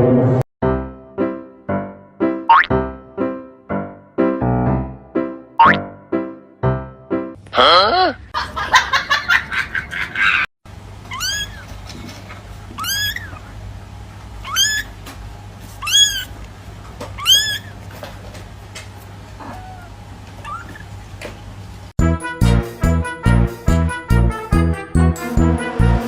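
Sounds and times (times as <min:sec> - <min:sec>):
cat meowing: 0:11.1 - 0:11.7, 0:12.8 - 0:13.4, 0:14.4 - 0:14.9, 0:15.8 - 0:16.3, 0:17.2 - 0:17.7, 0:19.4 - 0:20.8.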